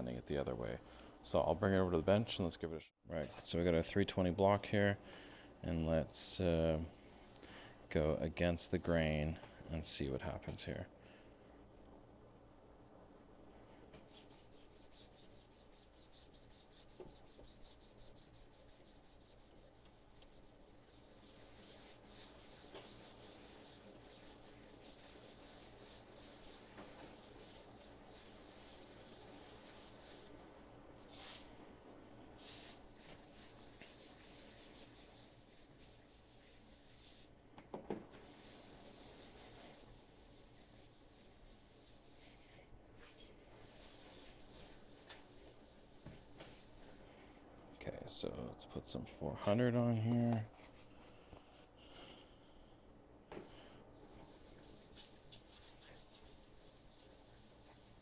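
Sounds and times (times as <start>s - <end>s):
sanding block strokes: 14.1s - 30.3s, 32.4s - 37.3s, 54.2s - 58.0s.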